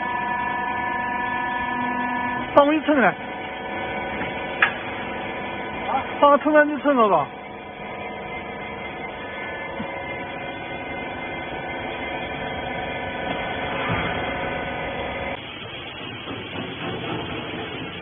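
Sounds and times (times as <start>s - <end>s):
electric motor and pump humming: 0.0s - 18.0s.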